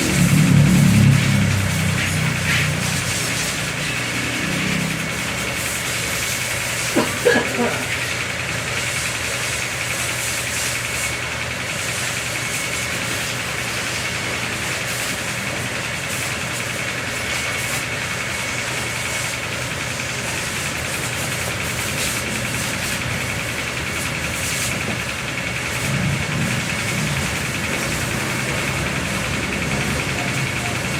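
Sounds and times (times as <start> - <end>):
motor humming and whining: 0.0 - 30.9.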